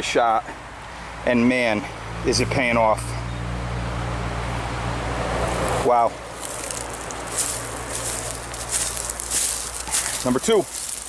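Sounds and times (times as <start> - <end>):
rustling in dry leaves: 5.4 - 11.0.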